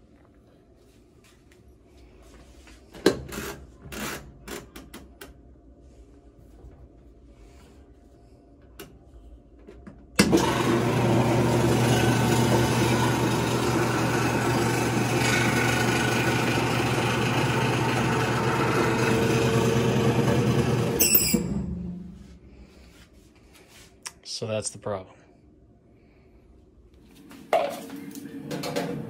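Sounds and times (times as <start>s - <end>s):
washing machine running noisily: 2.2s - 22.6s, 27.2s - 29.0s.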